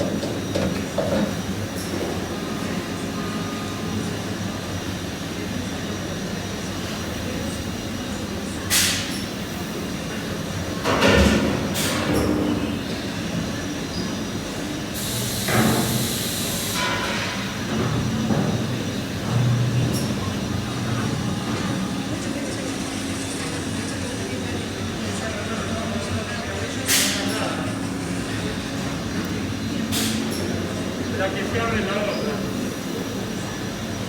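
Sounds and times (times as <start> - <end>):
workshop machinery hum: 0.0 - 34.0
compressed air hissing: 12.7 - 22.2, 26.9 - 34.0.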